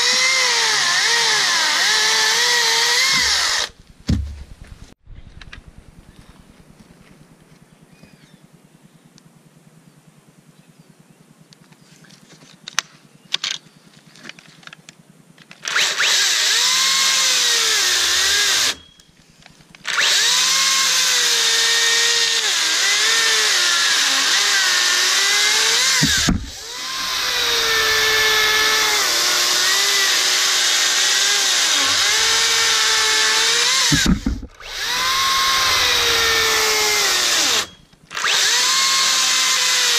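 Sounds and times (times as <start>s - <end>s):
electric chainsaw cutting wood: 0.0s - 3.8s, 15.7s - 18.8s, 19.8s - 39.9s.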